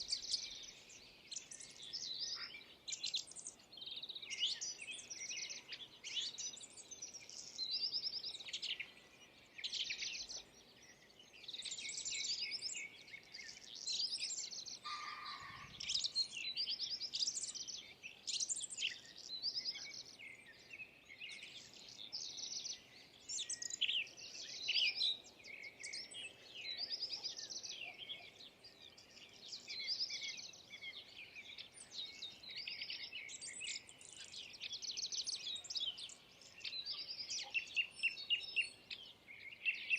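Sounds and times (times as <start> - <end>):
small birds chirping and twittering: 0.0 - 39.9.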